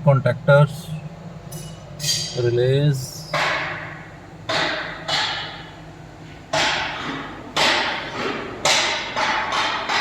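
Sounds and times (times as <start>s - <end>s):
hammer blows ringing: 1.5s - 5.6s.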